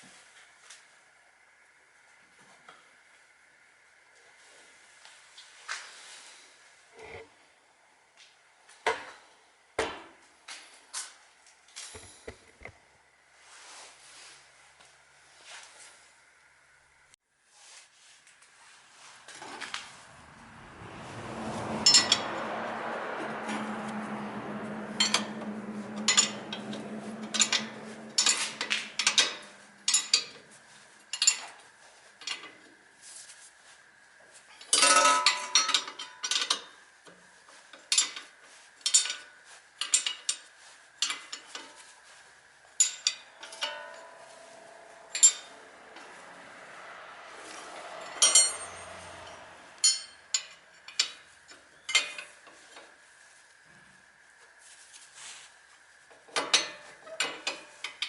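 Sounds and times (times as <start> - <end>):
steady low hum: 19.8 - 31.3
metal tools clinking on metal: 24.9 - 30.5, 31.1 - 31.6, 34.6 - 36.8, 37.9 - 40.4, 42.7 - 46.2, 47.5 - 52.5.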